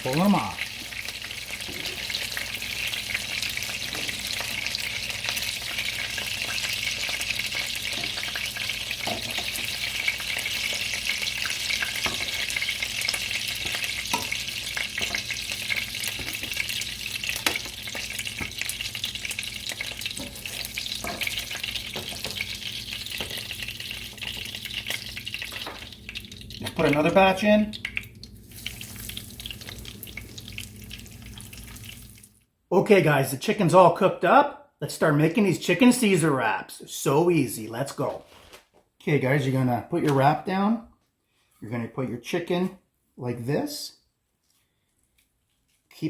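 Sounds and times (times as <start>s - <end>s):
cutlets sizzling in hot oil: 0.0s - 32.4s.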